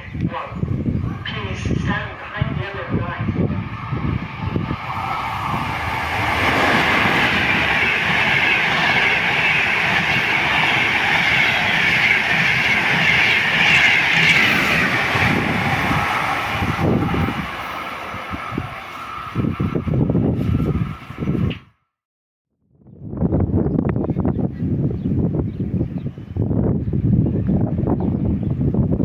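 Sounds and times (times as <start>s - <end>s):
train wheels on rails: 1.2s - 21.6s.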